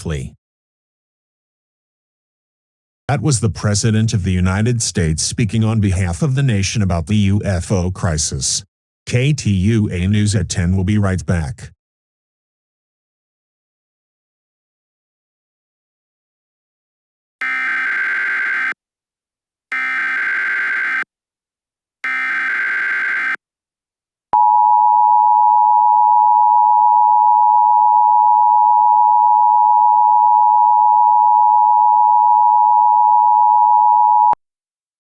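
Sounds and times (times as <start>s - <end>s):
buzzy digital data bursts: 17.4s - 18.8s, 19.8s - 21.0s, 22.1s - 23.4s.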